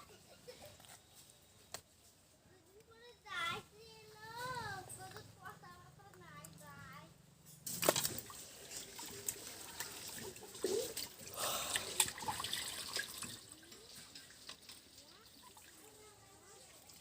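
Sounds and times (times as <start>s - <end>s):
water splashing and dripping: 7.6s - 17.0s.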